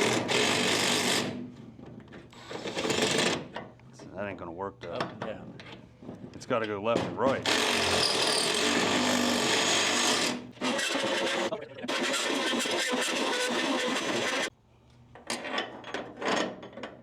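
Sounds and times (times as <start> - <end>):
drill grinding into steel: 0.0 - 1.4, 2.4 - 3.5, 7.4 - 14.5.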